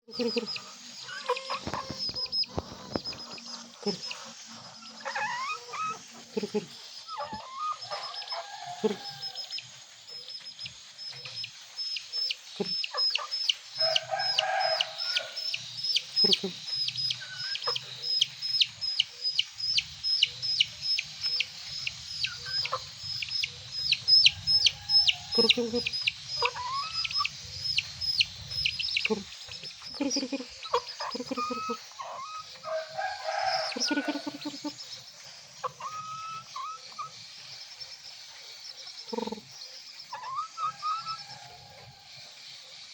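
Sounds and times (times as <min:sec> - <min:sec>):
faint high chirping: 0:00.0 - 0:42.9
chicks peeping: 0:00.1 - 0:42.9
young rooster calling: 0:00.2 - 0:03.2, 0:03.8 - 0:09.6, 0:12.7 - 0:17.8, 0:22.2 - 0:28.0, 0:28.6 - 0:34.8, 0:40.1 - 0:42.2.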